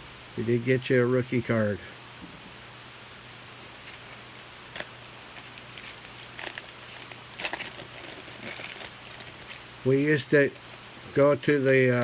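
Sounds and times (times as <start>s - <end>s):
cards clicking and rustling: 3.7s - 12.0s.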